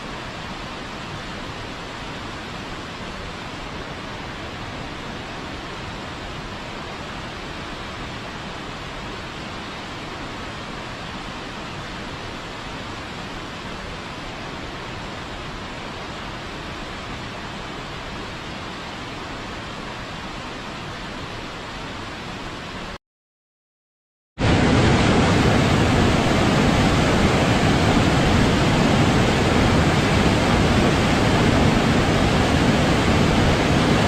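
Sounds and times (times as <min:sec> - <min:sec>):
waterfall rushing: 0:24.4 - 0:34.0.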